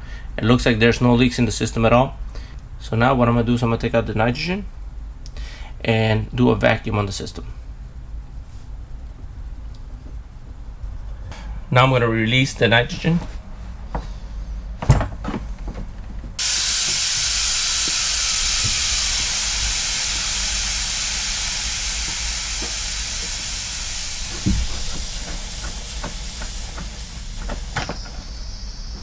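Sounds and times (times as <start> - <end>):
gas hissing from a valve: 16.4 - 29.0.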